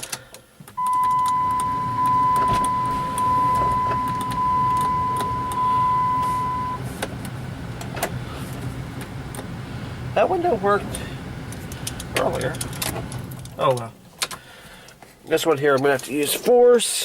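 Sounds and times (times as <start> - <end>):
low electrical hum: 0.7 - 14.2
dashboard warning chime: 0.8 - 6.8.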